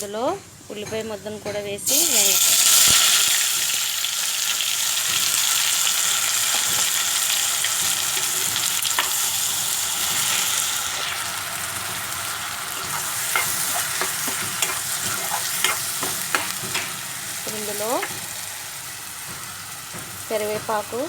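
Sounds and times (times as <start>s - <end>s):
onion paste sizzling in oil: 1.8s - 21.0s
spoon clicking against pan: 12.8s - 18.3s.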